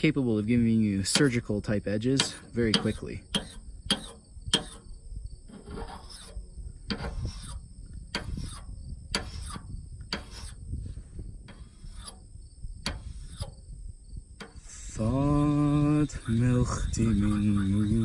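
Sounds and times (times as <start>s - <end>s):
whetstone scraping axe edge: 1.1s - 1.5s, 2.1s - 4.8s, 5.5s - 10.6s, 11.4s - 13.6s, 14.4s - 18.0s.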